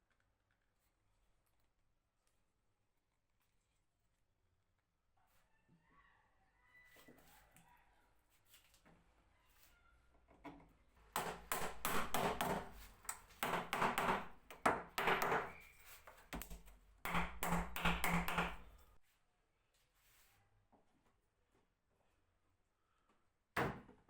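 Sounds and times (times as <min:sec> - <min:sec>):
rapid tapping on wood: 0:16.4 - 0:18.8.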